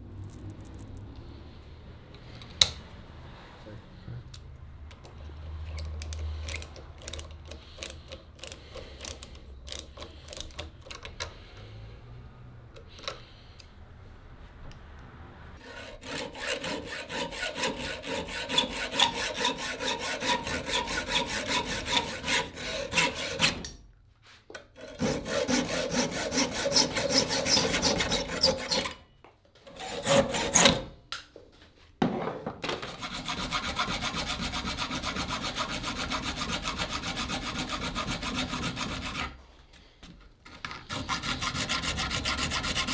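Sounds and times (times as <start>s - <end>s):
wooden handle being rubbed: 15.7s - 23.4s.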